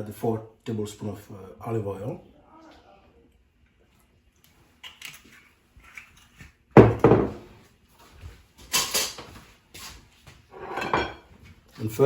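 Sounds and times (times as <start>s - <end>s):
kitchen clatter: 6.8s - 7.5s, 8.7s - 9.3s, 10.5s - 11.3s.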